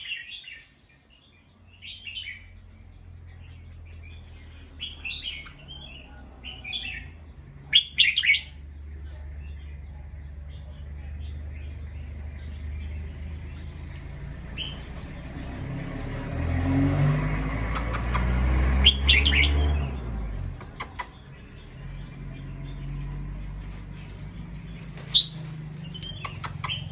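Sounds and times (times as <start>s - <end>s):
bulbul chirping: 17.6s - 19.6s, 20.6s - 21.5s, 26.0s - 26.9s.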